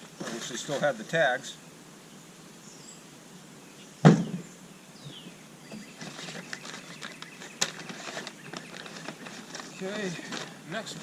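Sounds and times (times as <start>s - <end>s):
packing rustling: 6.0s - 11.0s.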